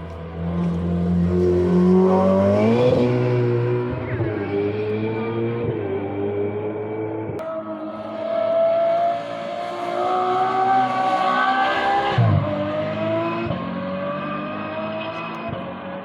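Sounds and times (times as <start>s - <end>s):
rally car engine accelerating: 0.0s - 16.0s.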